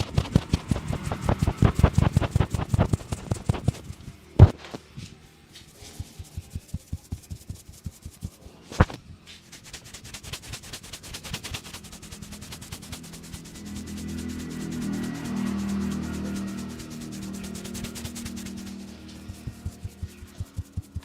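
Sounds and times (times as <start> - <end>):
hands tapping and slapping a head: 0.0 - 4.8.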